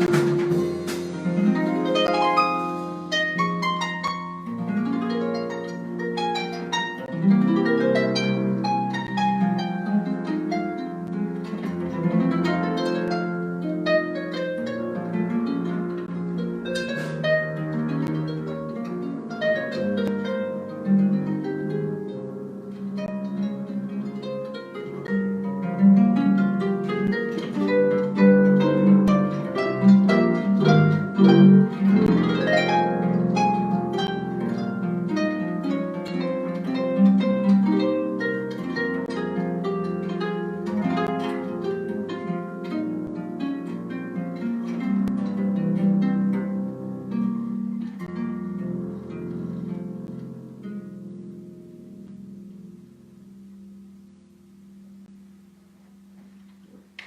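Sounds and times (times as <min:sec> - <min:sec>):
harp playing jazz: 0:00.0 - 0:57.0.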